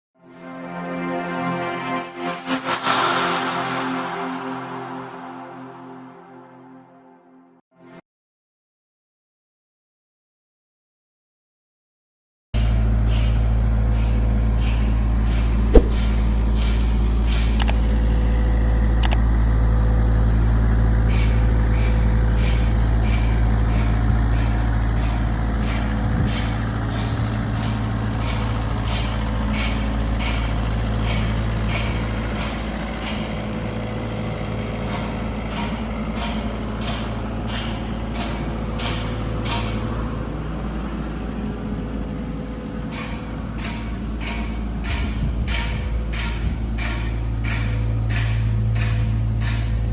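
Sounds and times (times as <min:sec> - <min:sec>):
diesel engine running: 0:12.6 - 0:44.8.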